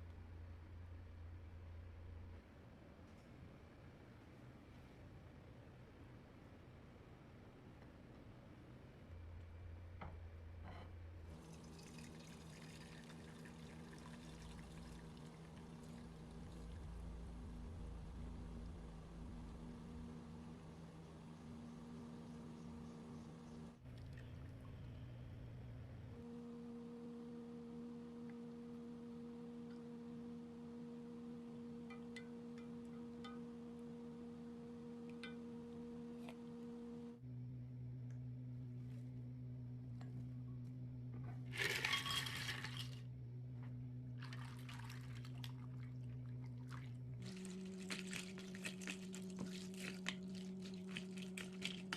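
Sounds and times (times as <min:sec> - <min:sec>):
steady low hum: 0:00.0 - 0:51.9
thin stream of pouring water: 0:11.3 - 0:16.9.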